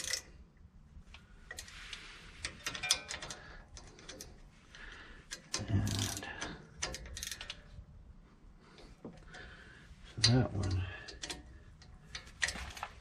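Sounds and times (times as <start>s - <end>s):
hand tools clicking on metal: 2.4s - 4.4s.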